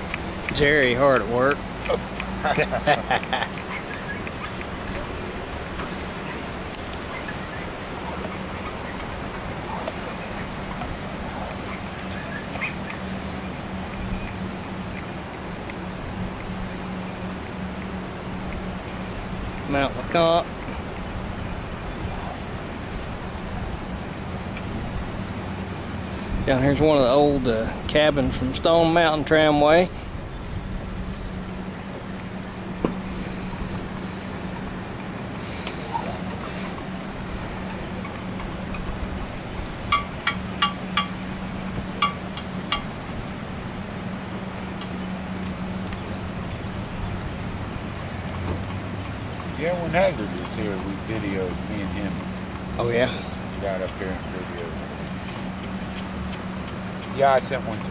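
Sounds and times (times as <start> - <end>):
aerial tramway humming: 0.0 - 57.9
constant rushing noise: 0.0 - 57.9
maintenance carriage running on rope: 45.5 - 57.9.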